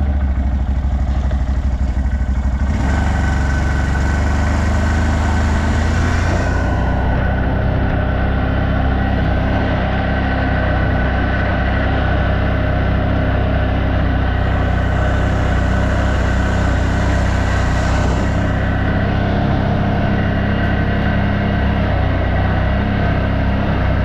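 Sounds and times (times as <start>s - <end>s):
engine running steadily: 0.0s - 24.0s.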